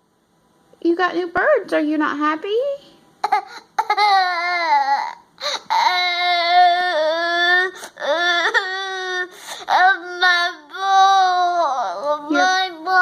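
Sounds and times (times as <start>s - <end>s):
young child crying loudly: 3.2s - 13.0s.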